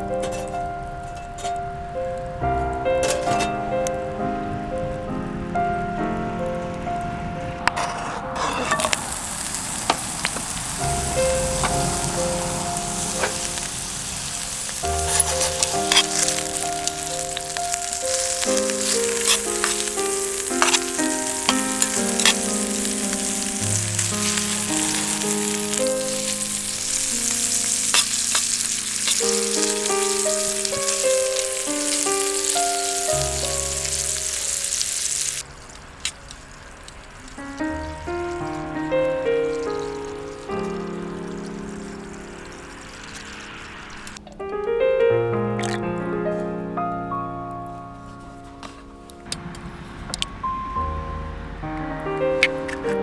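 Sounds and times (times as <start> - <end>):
music of held notes: 0.0 - 35.5, 36.2 - 53.0
food sizzling in a pan: 8.3 - 44.2
background music: 10.8 - 35.4.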